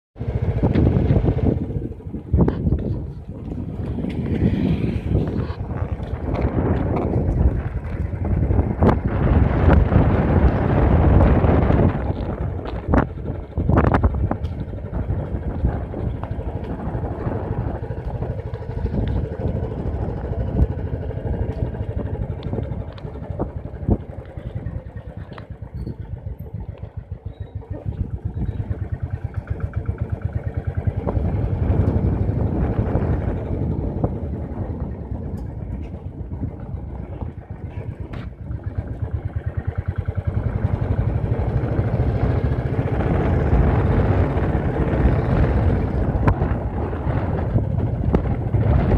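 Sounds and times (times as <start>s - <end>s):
motorcycle engine running: 0.2s - 48.9s.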